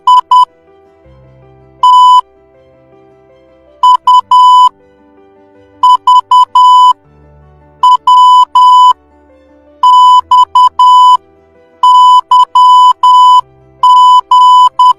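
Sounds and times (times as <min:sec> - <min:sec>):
morse code beeps: 0:00.0 - 0:00.5, 0:01.8 - 0:02.2, 0:03.8 - 0:04.7, 0:05.8 - 0:07.0, 0:07.8 - 0:09.0, 0:09.8 - 0:11.2, 0:11.8 - 0:14.9
faint background music: 0:00.0 - 0:14.9.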